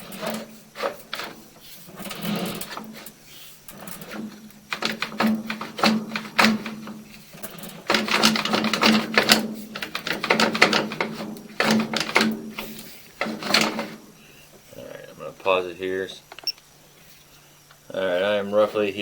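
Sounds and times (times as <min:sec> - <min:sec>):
cable clicking and rattling in drain: 0:00.0 - 0:14.0
low electrical hum: 0:00.0 - 0:19.0.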